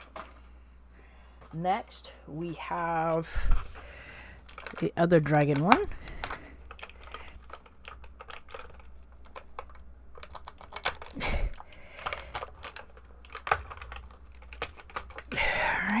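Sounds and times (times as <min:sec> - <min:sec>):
packaging clicks and rustles: 0:00.0 - 0:00.6, 0:02.8 - 0:16.0
packaging crinkling: 0:02.8 - 0:16.0.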